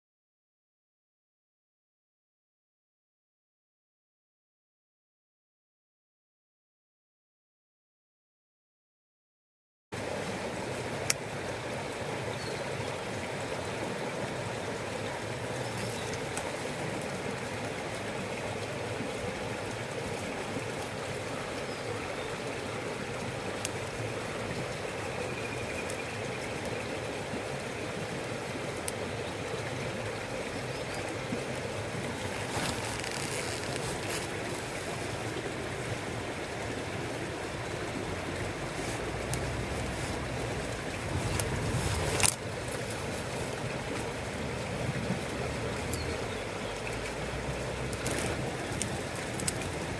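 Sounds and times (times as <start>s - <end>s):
campfire hissing: 10.0s - 49.9s
fire crackling: 23.5s - 24.0s, 47.4s - 49.9s.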